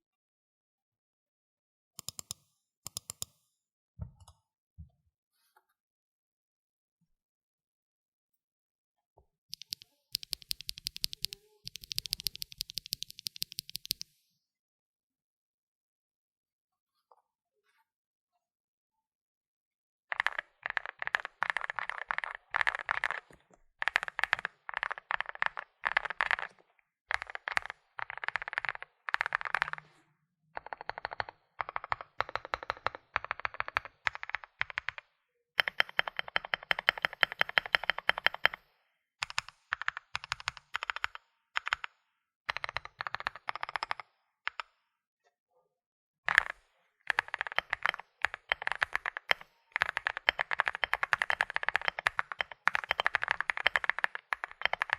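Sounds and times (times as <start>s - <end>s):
mechanical keyboard typing: 9.6s - 14.1s, 20.1s - 29.9s, 30.6s - 44.7s, 46.3s - 54.9s.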